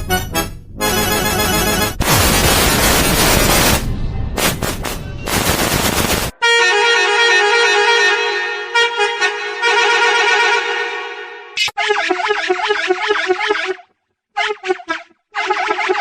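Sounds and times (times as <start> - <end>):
bus horn blast: 0.0 - 2.0, 6.4 - 16.0
harsh rapid crackling: 1.8 - 6.4.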